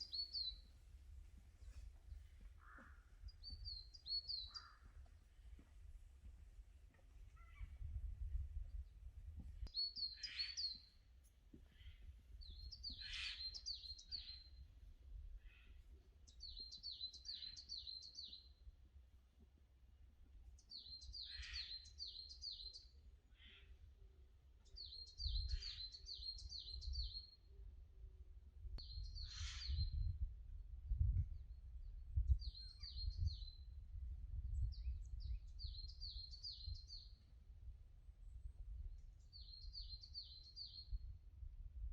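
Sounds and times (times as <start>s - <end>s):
songbird singing: 0.0s - 5.7s, 6.9s - 14.7s, 15.4s - 18.6s, 20.6s - 23.7s, 24.6s - 27.6s, 28.7s - 30.2s, 30.9s - 37.4s, 38.2s - 41.2s
faint low rumble: 0.0s - 9.7s.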